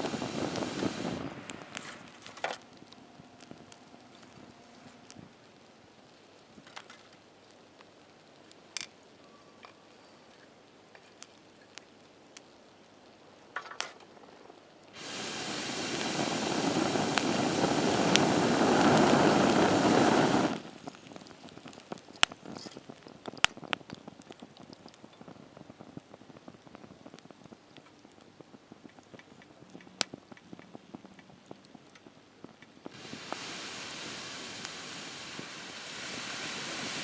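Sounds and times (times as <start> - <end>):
loud sizzling rush: 0.0 - 4.4, 15.0 - 20.8, 32.9 - 37.0
campfire crackling: 0.0 - 9.2, 10.6 - 37.0.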